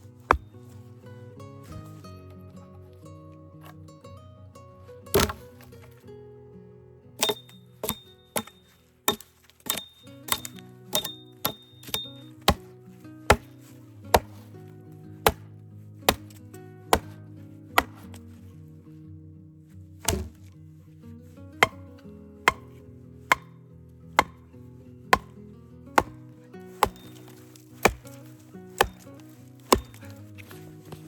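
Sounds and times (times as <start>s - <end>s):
axe chopping wood: 0.0s - 0.8s, 5.1s - 5.9s, 7.2s - 14.5s, 15.2s - 18.3s, 20.0s - 20.6s, 21.6s - 23.6s, 24.2s - 24.5s, 25.1s - 31.0s
background music with low notes: 0.0s - 31.0s.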